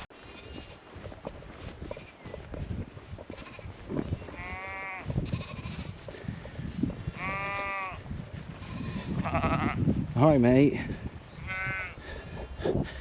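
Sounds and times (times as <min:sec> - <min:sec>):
sheep bleating: 0:03.3 - 0:06.0, 0:07.1 - 0:09.9, 0:11.4 - 0:12.0.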